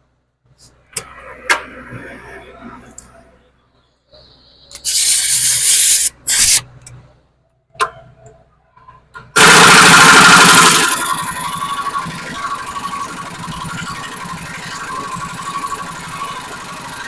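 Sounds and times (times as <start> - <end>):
air impact wrench bursts: 4.7 - 6.7, 9.4 - 11.4.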